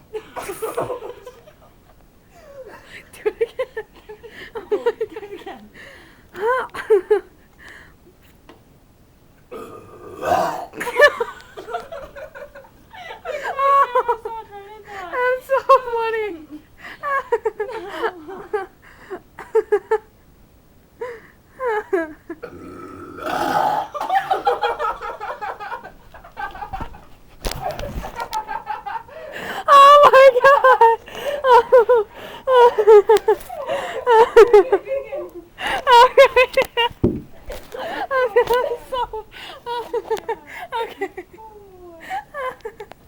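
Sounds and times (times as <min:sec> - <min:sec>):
person burping: 0:09.5 - 0:10.8, 0:22.4 - 0:24.0.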